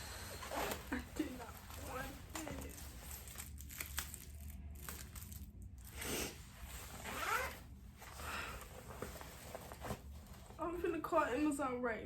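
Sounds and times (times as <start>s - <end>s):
backpack zipper being pulled: 0.2s - 0.9s, 5.9s - 7.6s.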